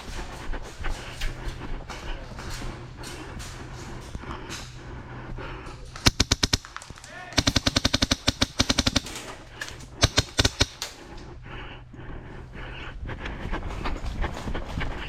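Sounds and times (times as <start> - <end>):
airsoft guns firing in bursts: 6.0 - 11.0.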